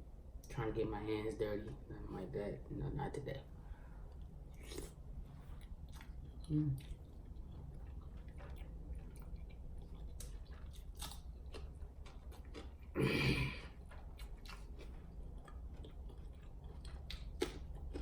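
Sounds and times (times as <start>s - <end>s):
person chewing food: 3.9s - 18.0s
wet mouth clicks and smacks: 16.9s - 18.0s.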